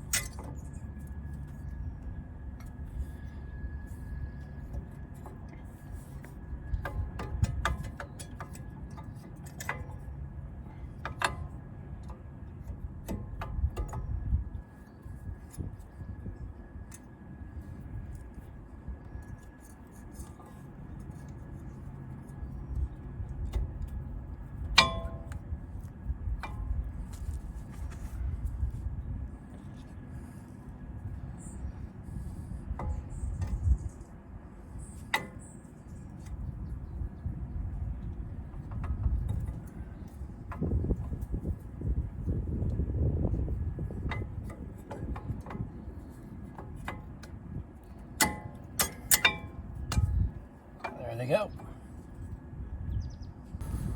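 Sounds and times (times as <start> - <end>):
ringing metal clink: 24.8 - 25.3
light metallic clicks and taps: 46.4 - 50.2.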